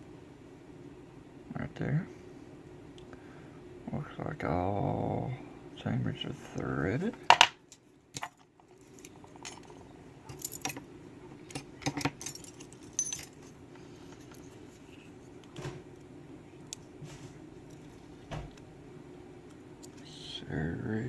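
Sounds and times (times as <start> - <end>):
small metal clicks and clinks: 11.5 - 13.5.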